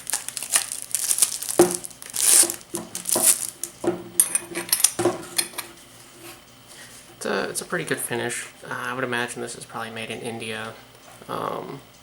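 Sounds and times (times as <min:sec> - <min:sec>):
packaging wrap crinkling and tearing: 0:00.0 - 0:03.8.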